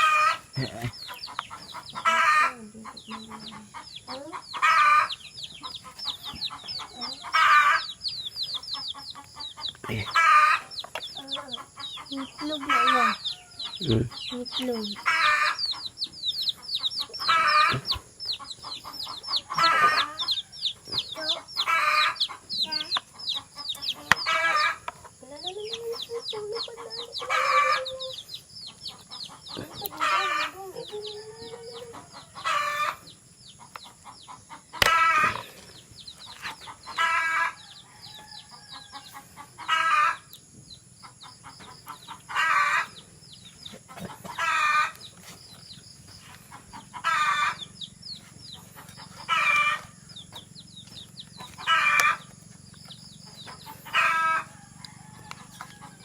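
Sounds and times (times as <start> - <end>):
hen cackling: 0.0 - 40.3, 41.0 - 45.1, 46.4 - 50.2, 50.9 - 52.4, 53.2 - 56.0.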